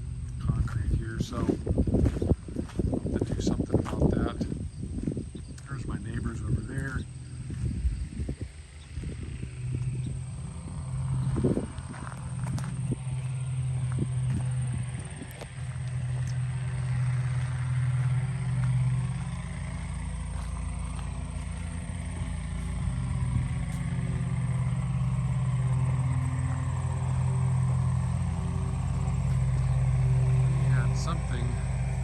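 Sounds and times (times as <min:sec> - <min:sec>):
vehicle engine running: 0:00.0 - 0:32.0.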